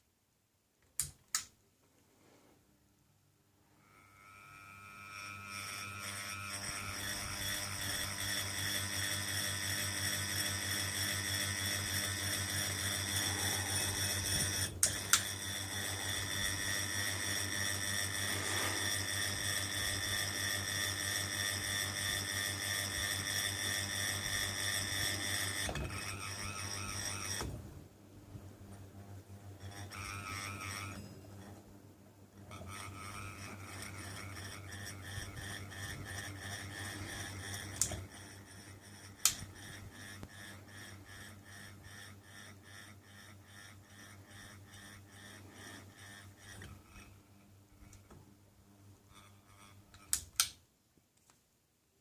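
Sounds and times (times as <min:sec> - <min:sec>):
ceiling fan humming: 0:03.2 - 0:50.8
pulsing high-pitched fan whine: 0:03.8 - 0:28.5, 0:29.2 - 0:31.6, 0:32.5 - 0:48.1
sharp click: 0:49.9 - 0:50.6
fan switch clicks: 0:50.0 - 0:50.6.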